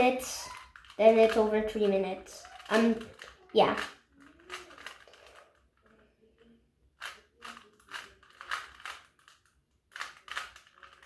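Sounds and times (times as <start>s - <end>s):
puzzle cube layers clacking: 0.0s - 5.6s, 7.0s - 11.0s.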